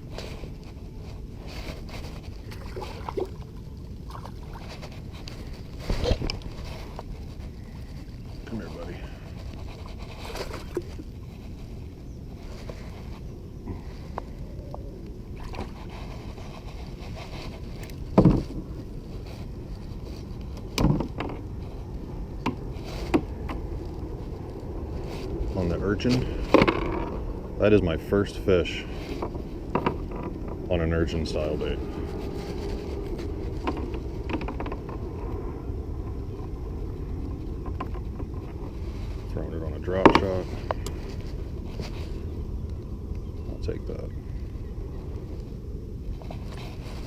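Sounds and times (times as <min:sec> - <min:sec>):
low rumble of wind: 0:00.0 - 0:47.0
thumps on small boat: 0:18.1 - 0:18.7, 0:20.7 - 0:21.4.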